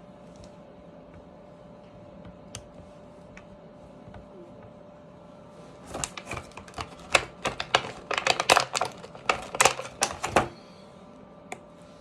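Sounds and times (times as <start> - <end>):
plastic toy pieces clattering: 5.9 - 10.6.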